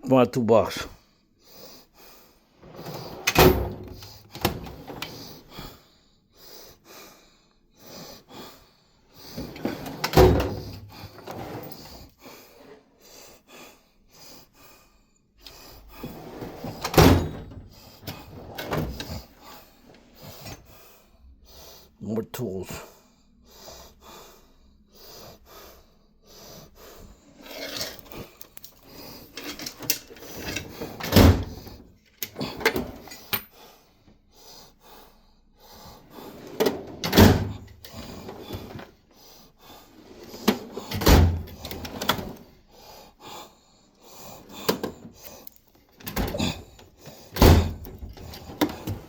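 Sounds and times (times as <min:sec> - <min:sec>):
tool chest drawers sliding: 0:02.6 - 0:05.4, 0:09.4 - 0:12.0, 0:16.0 - 0:19.4, 0:27.4 - 0:28.3, 0:29.0 - 0:33.3, 0:36.3 - 0:38.9, 0:39.9 - 0:42.4, 0:46.0 - 0:49.0
drawers banging shut: 0:02.7 - 0:05.1, 0:09.4 - 0:11.7, 0:16.0 - 0:19.2, 0:29.4 - 0:31.8, 0:36.4 - 0:38.8, 0:40.4 - 0:42.4, 0:47.4 - 0:49.0.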